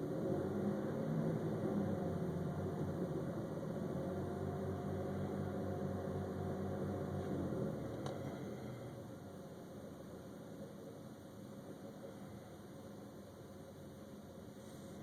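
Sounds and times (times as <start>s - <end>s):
engine revving unevenly: 0.0s - 8.8s.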